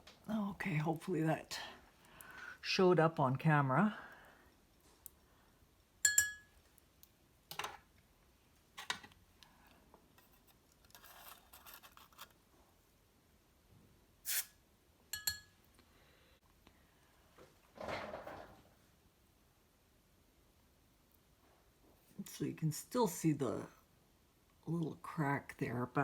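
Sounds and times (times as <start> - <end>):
scratchy rustle: 10.2 - 12.4.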